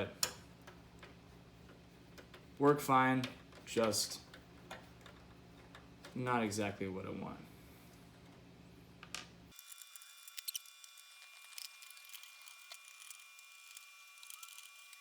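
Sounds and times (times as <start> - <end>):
small clicks and ticks: 9.6 - 15.0.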